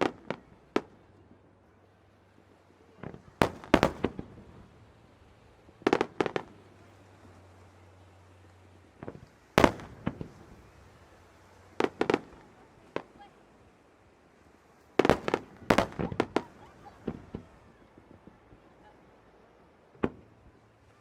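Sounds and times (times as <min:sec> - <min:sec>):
fireworks bangs: 0:03.0 - 0:04.6, 0:05.8 - 0:06.6, 0:09.0 - 0:10.7, 0:11.8 - 0:13.1, 0:15.0 - 0:18.4.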